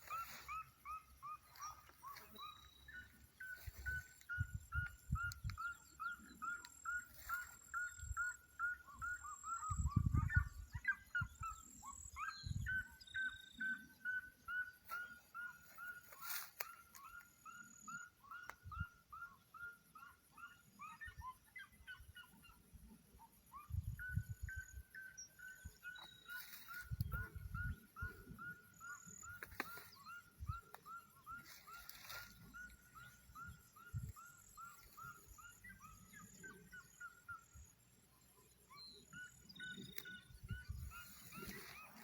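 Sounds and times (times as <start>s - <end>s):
farmyard fowl calling: 14.6s - 16.7s, 25.9s - 33.6s, 41.0s - 42.0s.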